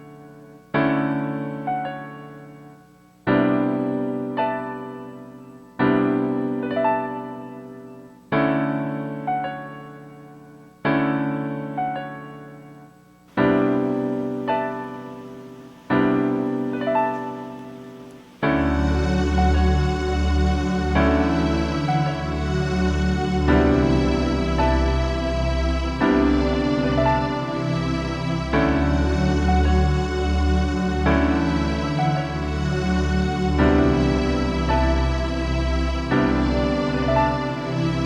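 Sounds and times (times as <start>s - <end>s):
slow piano music: 0.0s - 38.0s.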